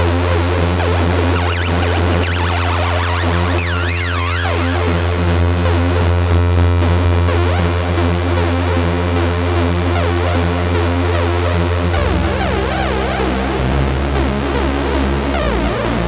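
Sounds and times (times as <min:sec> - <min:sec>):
synthesizer bass tone: 0:00.0 - 0:16.0
synthesizer repeating note pattern: 0:00.1 - 0:16.0
wobbling high synth sweep: 0:00.8 - 0:08.4.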